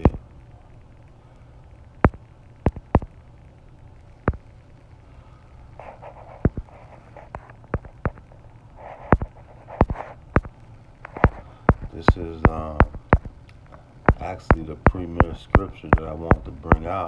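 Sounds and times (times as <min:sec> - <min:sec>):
low steady hum: 0:00.0 - 0:17.0
sharp clicks and taps: 0:02.0 - 0:03.2, 0:04.2 - 0:04.4, 0:05.8 - 0:08.3, 0:08.9 - 0:17.0.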